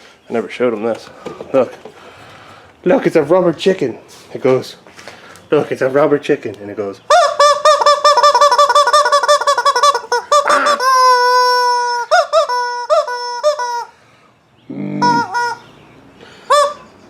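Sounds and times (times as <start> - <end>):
rubber chicken honks: 7.1 - 13.9, 14.9 - 15.7, 16.5 - 16.9
rubber chicken toy squawking: 7.1 - 14.0, 14.9 - 15.7, 16.5 - 16.9.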